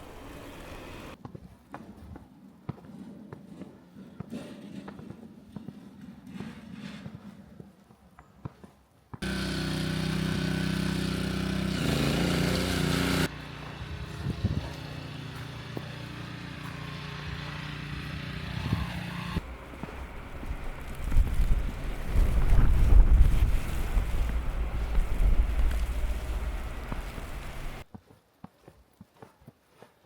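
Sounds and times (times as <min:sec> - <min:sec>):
engine running: 0:00.0 - 0:01.2, 0:09.2 - 0:27.8
faint footsteps: 0:19.4 - 0:30.0.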